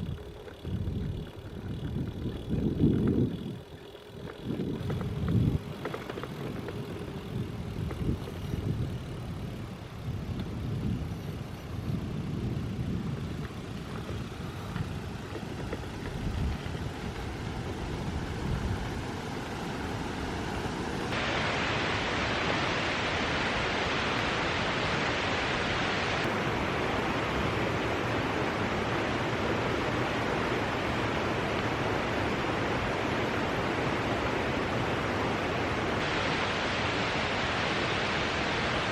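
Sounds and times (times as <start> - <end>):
wind buffeting microphone: 0.0 - 21.2
waterfall roaring: 16.8 - 38.9.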